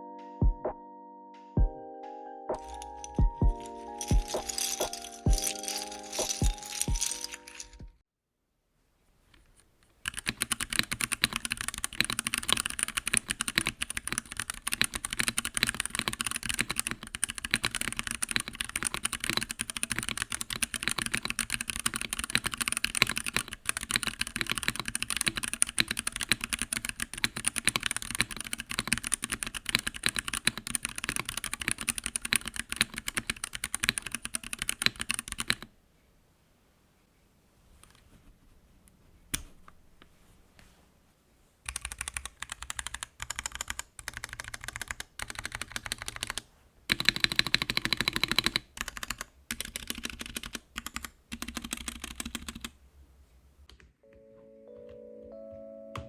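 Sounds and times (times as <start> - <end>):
mechanical keyboard typing: 2.6 - 7.8, 10.0 - 35.7, 41.7 - 52.8.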